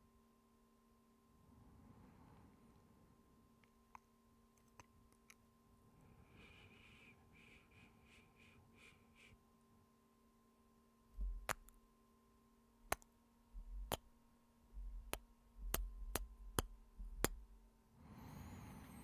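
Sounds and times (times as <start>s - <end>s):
soft breath out: 6.0s - 9.4s
lip-smack kisses: 11.3s - 11.8s, 13.9s - 14.1s.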